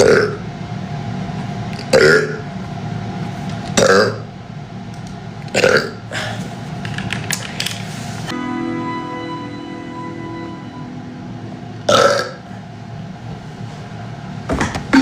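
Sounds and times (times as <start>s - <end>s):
man burping loudly: 1.8s - 2.4s, 5.6s - 6.2s, 11.9s - 12.4s.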